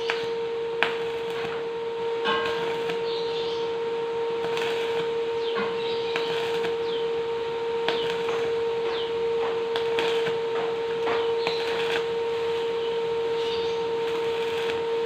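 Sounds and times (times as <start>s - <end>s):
welding arc crackling: 0.0s - 15.0s
welding machine hum: 0.0s - 15.0s.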